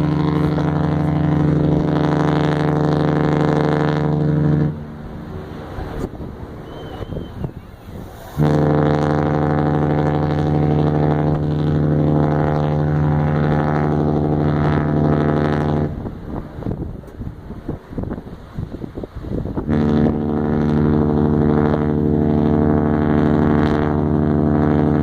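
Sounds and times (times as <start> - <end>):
ship's horn blast: 0.0 - 17.0, 19.5 - 25.0.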